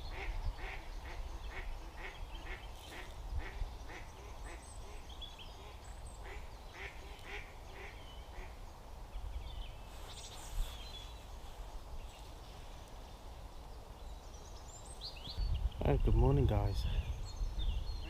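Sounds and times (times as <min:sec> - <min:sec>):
small birds chirping: 0:00.0 - 0:18.0
ducks quacking: 0:00.1 - 0:08.5.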